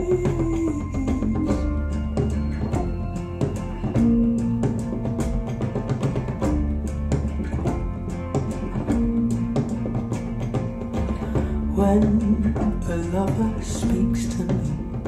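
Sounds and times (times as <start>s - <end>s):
guitar: 0.0s - 15.0s
instrumental music over loudspeakers: 0.0s - 15.0s
drum hits: 1.2s - 12.9s.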